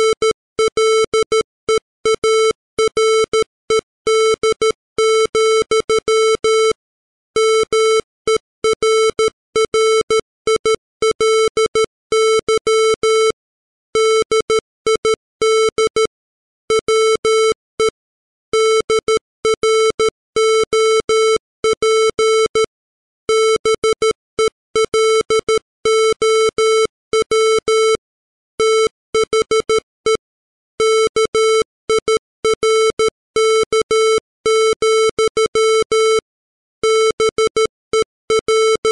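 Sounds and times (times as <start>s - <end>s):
morse code tone: 36.8s - 38.9s.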